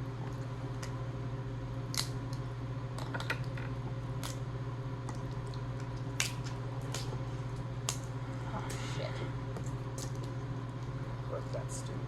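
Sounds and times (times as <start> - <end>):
steady low hum: 0.0 - 12.0
shells cracking: 5.8 - 7.2.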